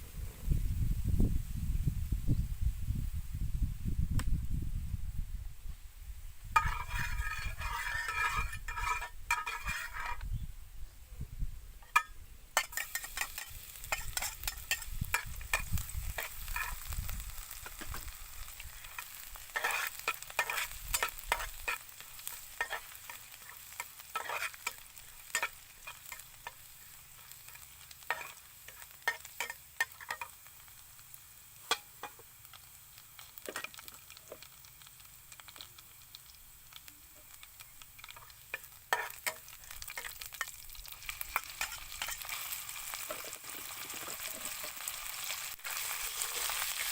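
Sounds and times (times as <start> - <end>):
meat sizzling in a pan: 6.4 - 10.3, 11.8 - 46.9
utensil scraping and clicking on pan: 6.6 - 10.3, 11.8 - 17.0, 17.6 - 30.4, 31.7 - 32.6, 38.0 - 44.9.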